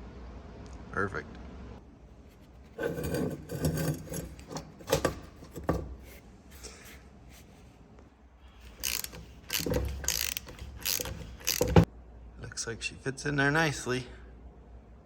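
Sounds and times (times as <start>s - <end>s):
metal vise parts scraping and knocking: 2.6s - 7.0s, 8.6s - 11.9s.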